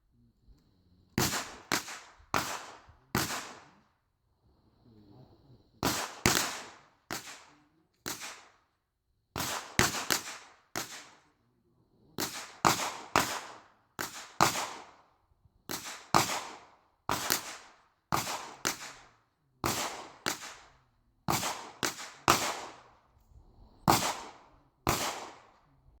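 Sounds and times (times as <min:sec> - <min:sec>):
gunshots with brief echo: 0:01.2 - 0:03.8, 0:05.8 - 0:08.5, 0:09.4 - 0:11.2, 0:12.2 - 0:15.0, 0:15.7 - 0:23.0, 0:23.8 - 0:25.6.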